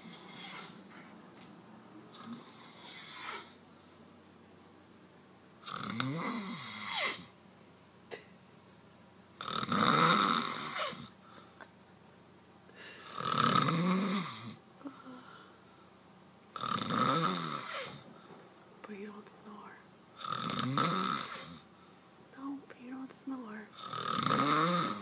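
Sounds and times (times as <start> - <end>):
man snoring loudly: 2.1 - 3.6, 5.6 - 7.3, 9.4 - 11.1, 13.0 - 14.6, 16.6 - 18.0, 20.2 - 21.6, 23.8 - 25.0.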